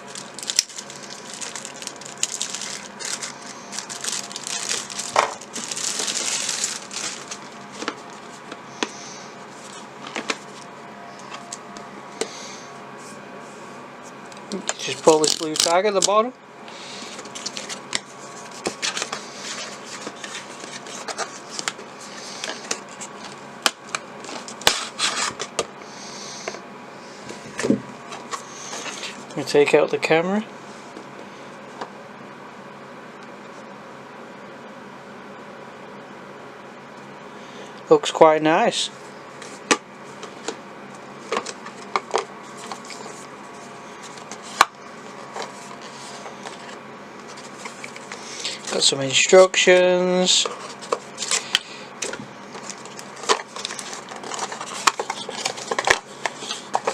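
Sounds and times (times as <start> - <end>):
box packaging rustling and scraping: 0.0 - 15.8, 16.8 - 25.6, 27.2 - 29.4, 39.3 - 48.9, 49.6 - 56.9
faint steady hum: 0.0 - 56.9.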